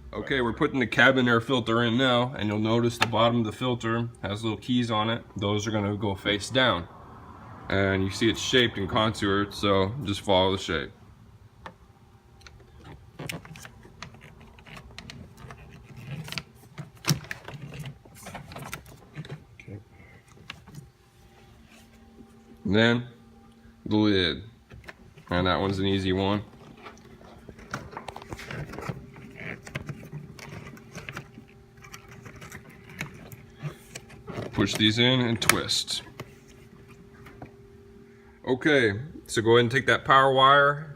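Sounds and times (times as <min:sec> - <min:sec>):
filter rubbing and scraping in plastic housing: 0:12.5 - 0:21.0, 0:24.7 - 0:37.6.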